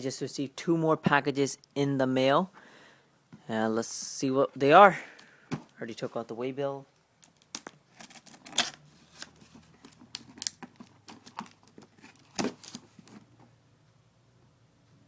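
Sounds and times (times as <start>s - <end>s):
cardboard package being opened: 7.2s - 13.3s.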